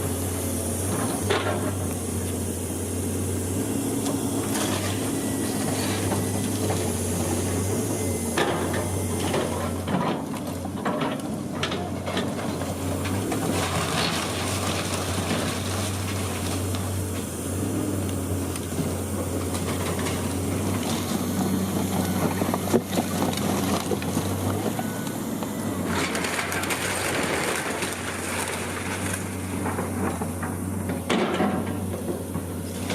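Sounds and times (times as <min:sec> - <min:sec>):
diesel engine running: 0:00.0 - 0:32.9
debris crunching and clattering: 0:25.9 - 0:32.1.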